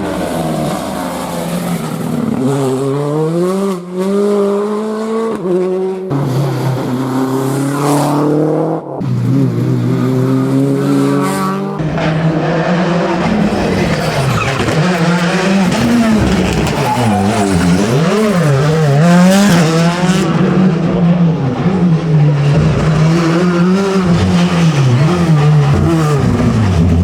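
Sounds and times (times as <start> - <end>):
rally car engine revving: 0.0 - 27.0
tyre noise: 11.8 - 20.0.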